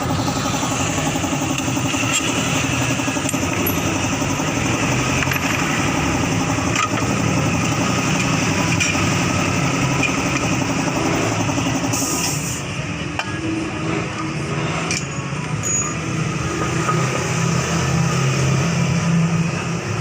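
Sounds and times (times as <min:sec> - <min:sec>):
motorcycle engine idling: 0:00.0 - 0:11.9.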